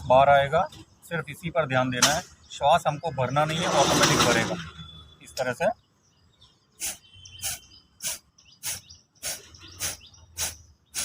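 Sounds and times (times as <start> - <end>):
forceful nasal exhalations: 6.8 - 11.0.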